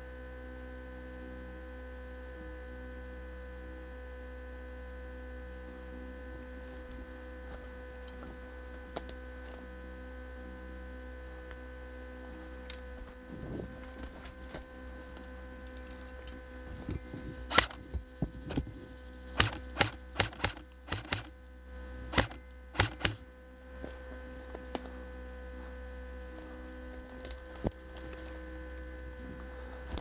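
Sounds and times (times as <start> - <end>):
steady electrical hum: 0.0 - 30.0
sharp cracks and snaps: 12.6 - 12.9, 17.5 - 17.8, 19.4 - 21.3, 22.1 - 23.3, 27.0 - 28.2.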